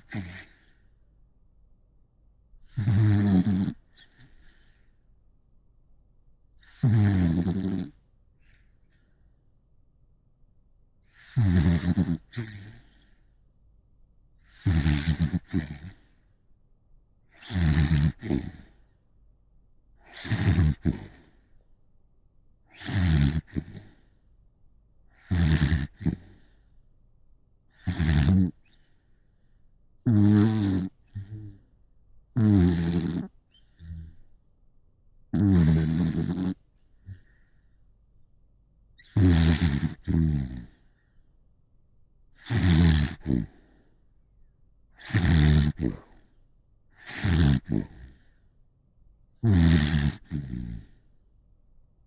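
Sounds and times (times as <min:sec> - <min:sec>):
loud rasping snores: 0:00.0 - 0:00.8, 0:02.7 - 0:04.8, 0:06.6 - 0:08.0, 0:11.1 - 0:13.2, 0:14.5 - 0:16.2, 0:17.4 - 0:18.9, 0:20.0 - 0:21.5, 0:22.7 - 0:24.1, 0:25.2 - 0:26.6, 0:27.8 - 0:28.9, 0:30.1 - 0:31.7, 0:32.4 - 0:34.3, 0:35.4 - 0:37.6, 0:39.0 - 0:41.0, 0:42.4 - 0:43.8, 0:45.0 - 0:46.3, 0:47.0 - 0:48.4, 0:49.4 - 0:51.1.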